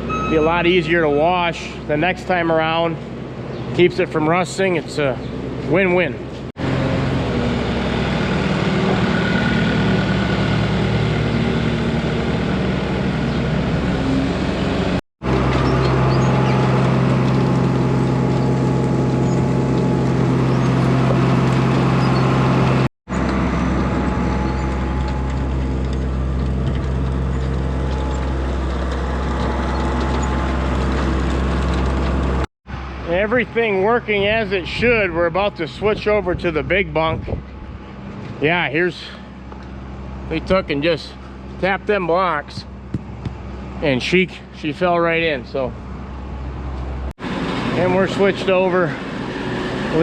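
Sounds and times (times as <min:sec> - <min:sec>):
tractor engine running: 0:00.0 - 0:50.0.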